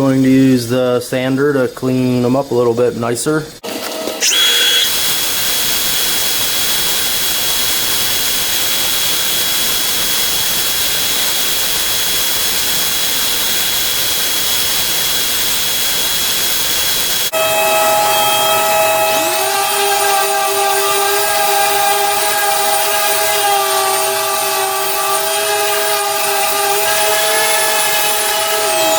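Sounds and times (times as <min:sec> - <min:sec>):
motor with steady tones: 0:03.6 - 0:11.4, 0:15.0 - 0:28.9
electric sander whirring: 0:03.7 - 0:06.4, 0:17.2 - 0:28.9.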